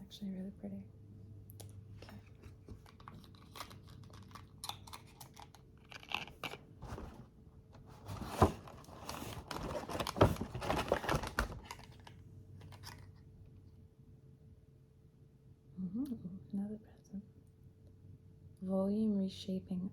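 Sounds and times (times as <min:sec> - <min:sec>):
cellophane rustling and tearing: 0:02.1 - 0:13.2.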